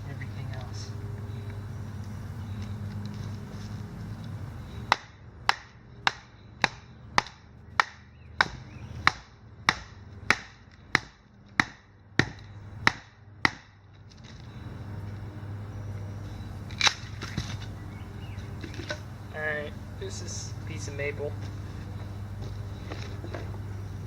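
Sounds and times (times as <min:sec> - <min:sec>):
knife batoned splitting wood: 0:04.9 - 0:13.8.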